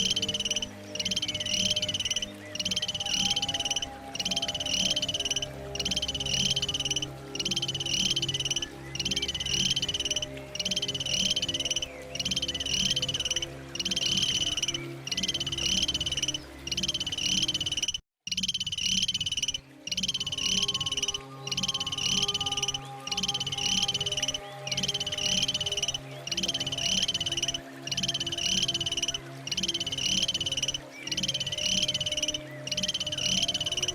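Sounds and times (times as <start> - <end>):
animal high-pitched trilled call: 0.0 - 33.9.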